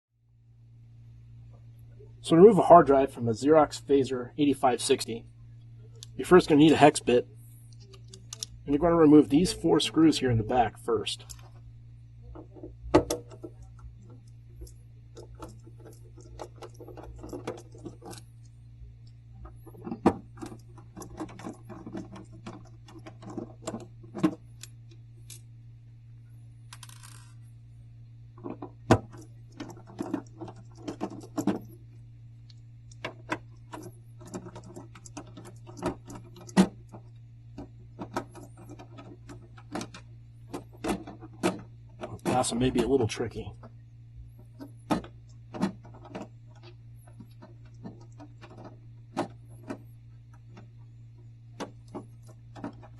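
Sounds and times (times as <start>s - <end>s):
steady low hum: 0.2s - 52.9s
screwdriver metallic clicks and rattles: 12.4s - 18.2s.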